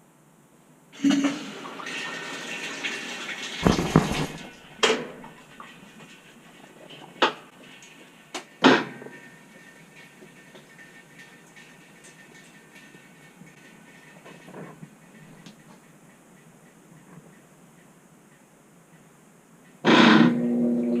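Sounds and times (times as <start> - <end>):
washing machine water rushing: 1.0 - 14.4
sharp knocks: 3.6 - 4.6.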